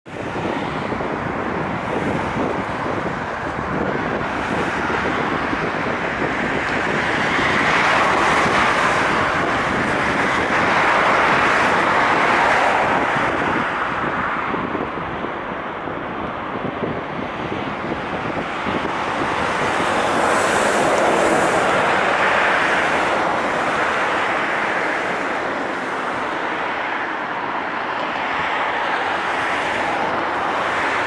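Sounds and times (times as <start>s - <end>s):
electric train on rails: 0.2s - 31.0s.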